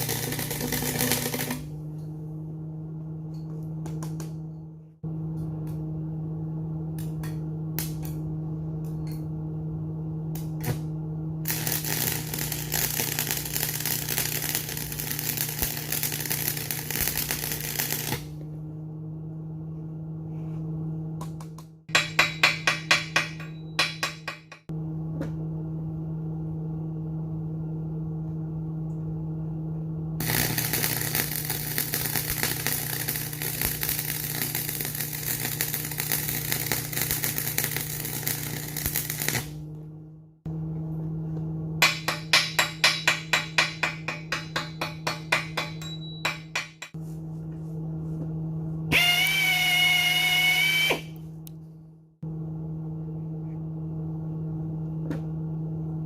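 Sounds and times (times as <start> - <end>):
welding arc crackling: 0.0 - 1.7, 11.5 - 18.4, 30.2 - 39.6, 48.9 - 51.2
arc welder humming: 0.0 - 19.9, 30.1 - 52.6
power tool whining: 48.9 - 51.2.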